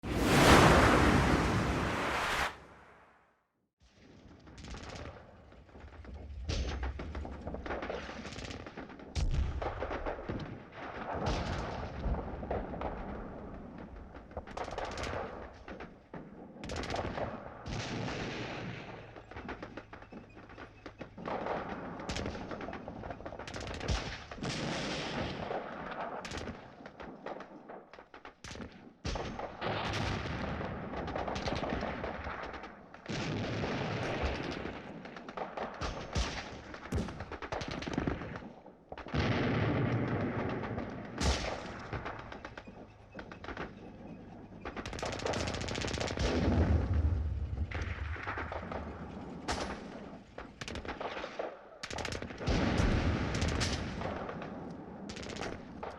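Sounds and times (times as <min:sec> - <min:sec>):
gunshots: 0:28.5 - 0:43.8, 0:44.6 - 0:55.9.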